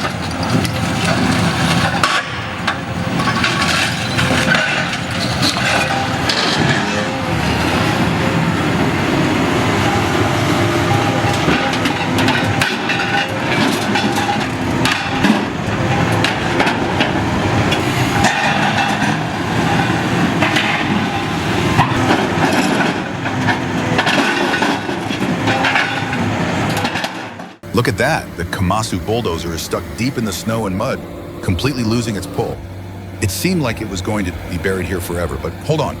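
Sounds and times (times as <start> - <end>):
metallic clanks and cracking knocks: 0.0 - 7.1, 11.3 - 21.2, 21.8 - 27.6
heavy machinery engine running: 0.0 - 36.0.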